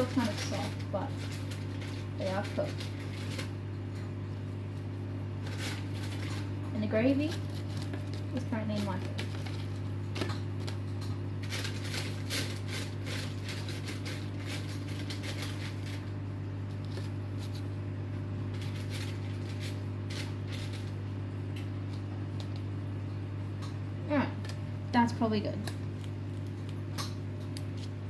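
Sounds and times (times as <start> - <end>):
kitchen appliance humming: 0.0 - 28.0.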